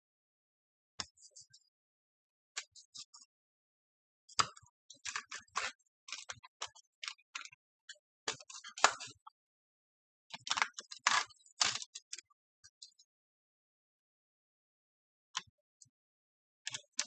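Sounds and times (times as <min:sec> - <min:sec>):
clicks and crackles handling model wing: 0:10.4 - 0:12.2.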